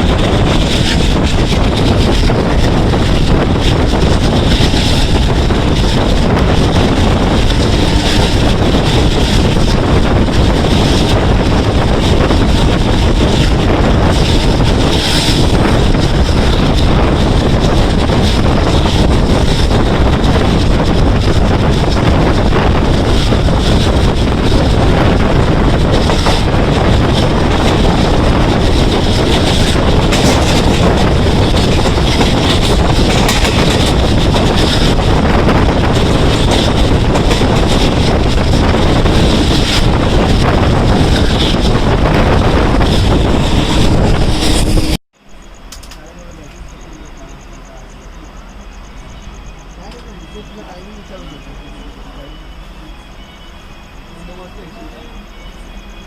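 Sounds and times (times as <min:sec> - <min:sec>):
train wheels on rail: 0:00.0 - 0:56.0
wind buffeting microphone: 0:00.0 - 0:56.0
wind rush: 0:00.0 - 0:56.0.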